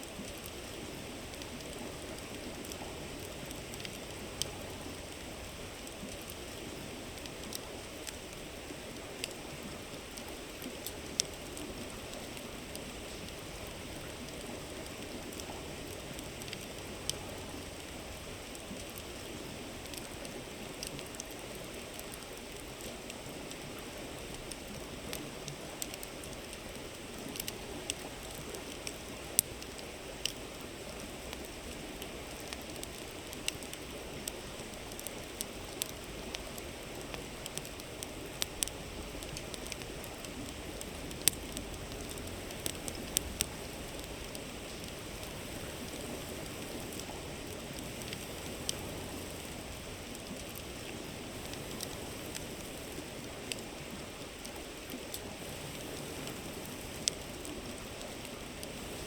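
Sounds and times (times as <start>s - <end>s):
campfire crackling and popping: 0.0s - 59.0s
flowing river: 0.0s - 59.0s.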